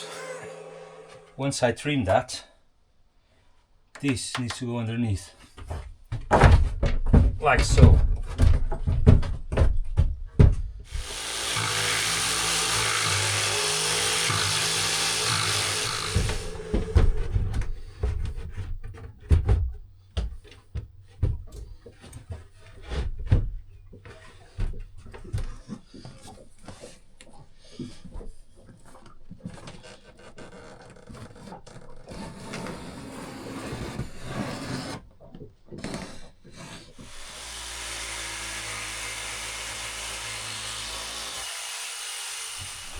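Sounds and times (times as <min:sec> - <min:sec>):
power tool running: 0:00.0 - 0:01.4, 0:10.9 - 0:17.6, 0:37.0 - 0:42.9
wood knocking and scraping: 0:05.4 - 0:26.9.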